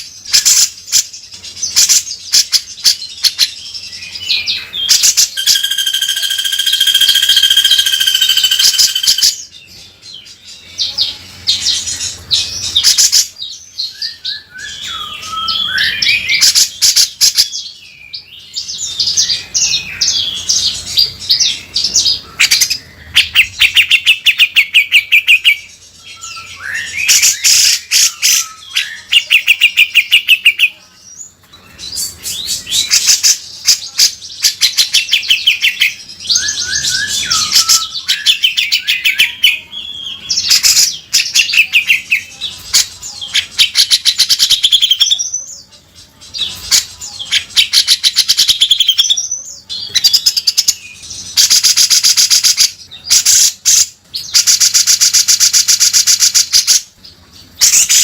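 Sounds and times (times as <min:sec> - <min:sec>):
bulbul singing: 0:00.0 - 0:58.0.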